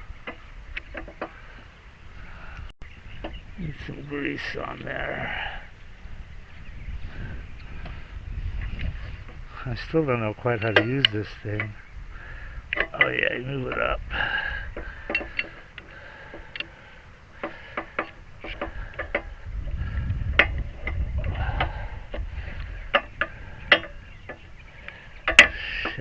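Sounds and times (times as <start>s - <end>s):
low rumble: 0.0s - 17.4s, 18.2s - 25.3s
hive lifter clicks and knocks: 0.2s - 1.4s, 10.5s - 11.8s, 12.7s - 14.0s, 14.7s - 16.7s, 17.4s - 26.0s.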